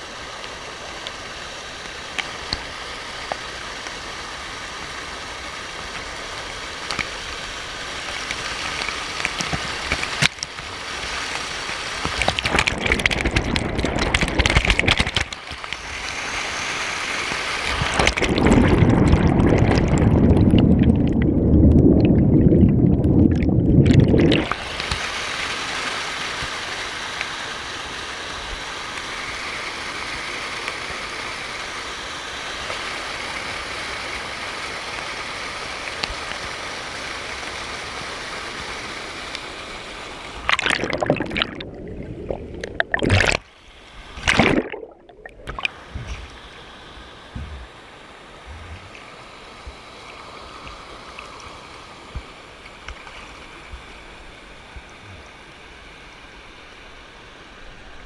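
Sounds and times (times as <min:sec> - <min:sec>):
waterfall rushing: 0:00.0 - 0:20.6, 0:24.0 - 0:52.7
loud water splashing: 0:07.1 - 0:25.8, 0:40.3 - 0:46.5.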